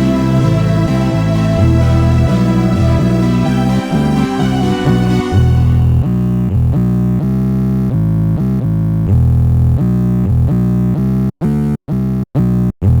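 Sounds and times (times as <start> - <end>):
electronic music with synthesizer chords: 0.0 - 7.1.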